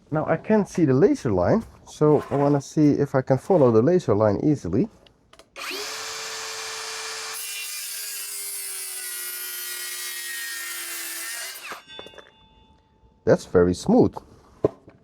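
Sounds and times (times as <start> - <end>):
circular saw cutting wood: 5.6 - 12.0.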